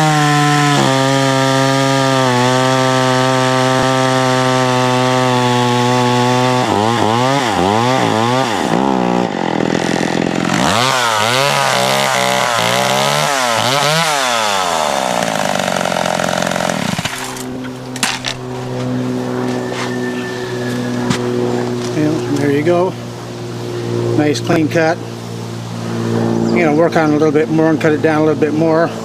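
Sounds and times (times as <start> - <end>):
chainsaw cutting wood: 0.0 - 22.8.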